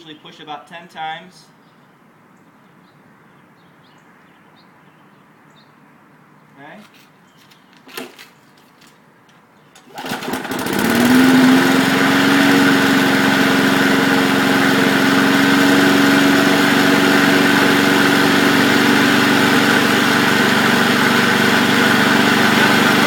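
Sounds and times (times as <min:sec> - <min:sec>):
lawn mower engine starting: 0:07.8 - 0:08.4, 0:09.7 - 0:23.0.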